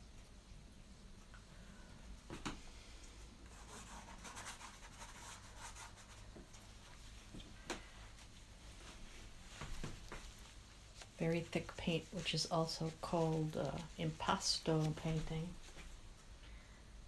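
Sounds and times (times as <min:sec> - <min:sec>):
paintbrush scratching on canvas: 0:03.5 - 0:07.0.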